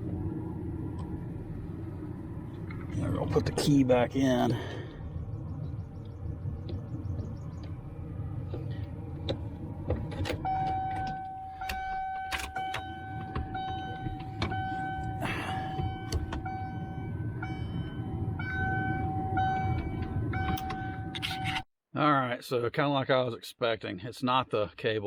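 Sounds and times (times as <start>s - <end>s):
steady low rumble: 0.0s - 21.4s
electronic warning chime: 10.5s - 21.6s.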